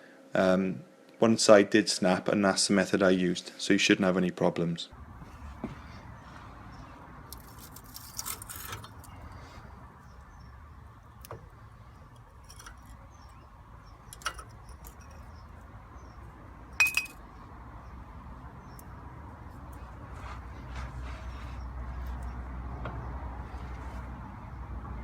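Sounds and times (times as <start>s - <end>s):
metal brake parts rattling: 7.3s - 9.2s, 11.4s - 15.4s
ringing metallic clink: 16.8s - 17.2s.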